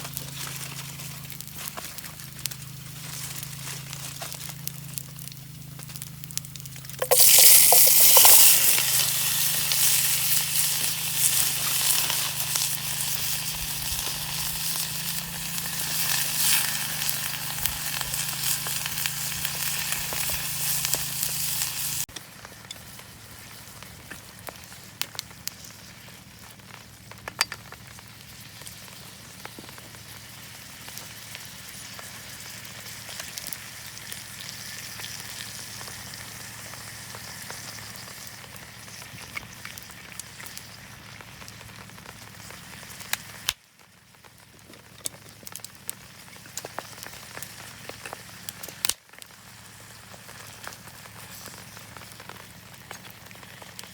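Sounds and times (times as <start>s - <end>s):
food sizzling in hot pan: 5.5s - 22.1s, 30.0s - 43.5s.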